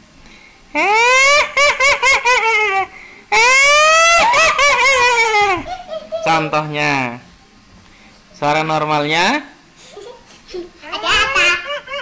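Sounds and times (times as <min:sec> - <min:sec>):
shrill cackling laugh: 0:00.8 - 0:06.5, 0:09.8 - 0:12.0.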